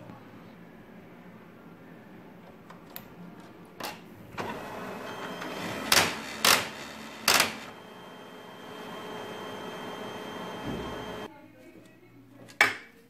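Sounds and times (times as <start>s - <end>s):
laser printer running: 4.4s - 11.3s.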